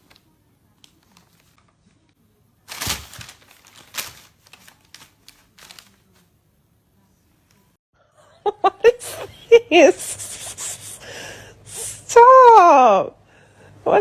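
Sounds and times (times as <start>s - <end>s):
rustling and crinkling: 0.0s - 6.4s.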